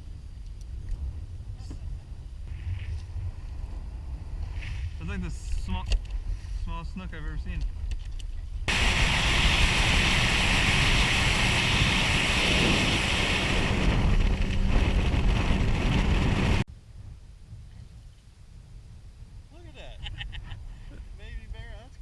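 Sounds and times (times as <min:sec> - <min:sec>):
wind buffeting microphone: 0:00.0 - 0:22.0
low rumble: 0:08.4 - 0:17.1.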